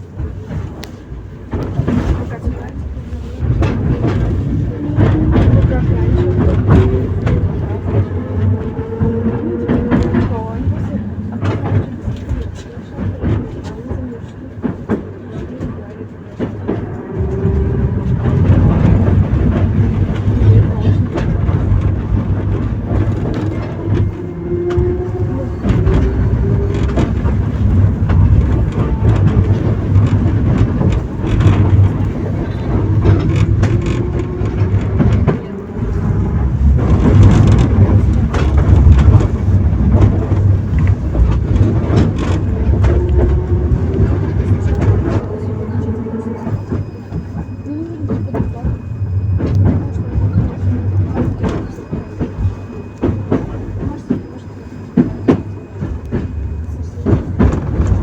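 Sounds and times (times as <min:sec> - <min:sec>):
tram rumbling on rails: 0:00.0 - 0:58.0
wheels clicking over track: 0:00.0 - 0:58.0.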